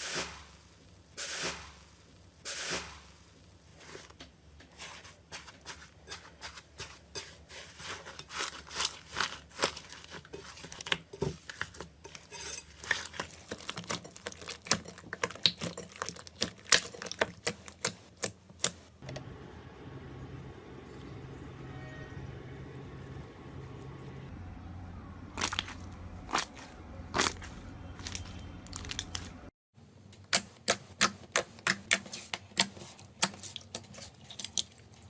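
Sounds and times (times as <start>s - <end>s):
steady low hum: 19.0s - 28.6s.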